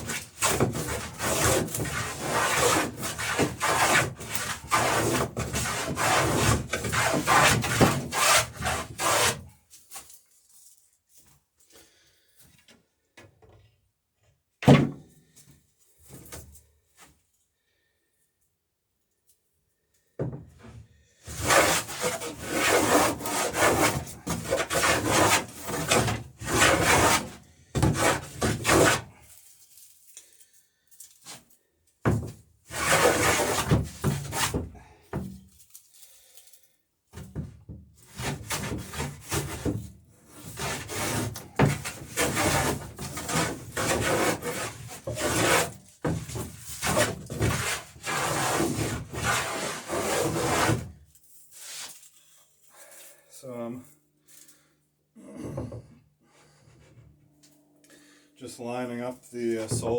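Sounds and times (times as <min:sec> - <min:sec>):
hand plane shaving wood: 0:00.0 - 0:09.5, 0:21.3 - 0:29.3, 0:32.7 - 0:34.7, 0:38.0 - 0:51.0.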